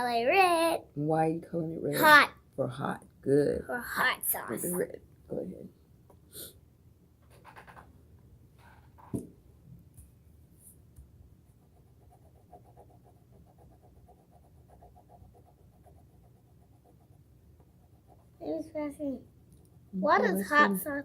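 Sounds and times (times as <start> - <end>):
crayon scratching on paper: 11.6 - 18.4.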